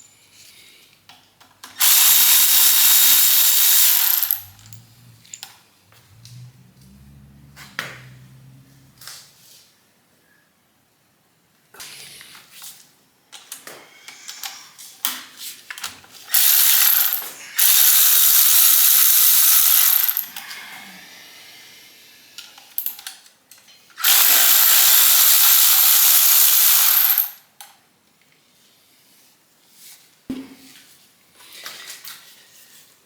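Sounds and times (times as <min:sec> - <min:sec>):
power tool unfastening bolts: 0:01.7 - 0:05.4, 0:16.3 - 0:20.3, 0:24.0 - 0:27.4
ratchet clicks: 0:01.8 - 0:04.8, 0:16.3 - 0:20.3, 0:24.0 - 0:27.4.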